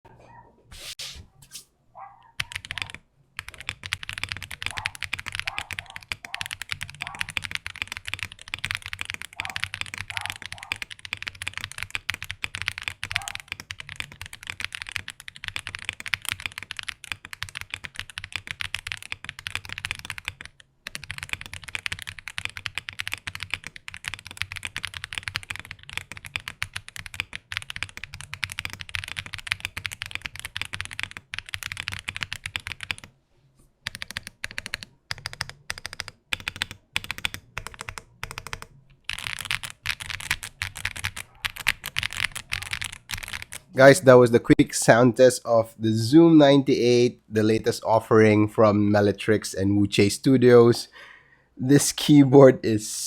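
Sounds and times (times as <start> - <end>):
fast mechanical keyboard typing: 2.4 - 33.1, 33.8 - 44.0.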